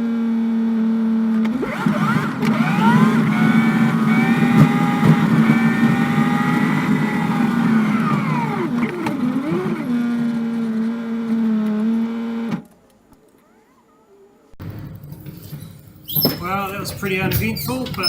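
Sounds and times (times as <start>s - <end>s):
bus engine running: 0.0s - 12.6s.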